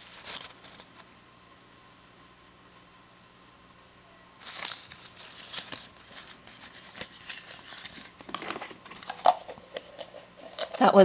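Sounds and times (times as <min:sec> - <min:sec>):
packaging and paper crinkling: 0:00.0 - 0:01.1, 0:04.4 - 0:11.0.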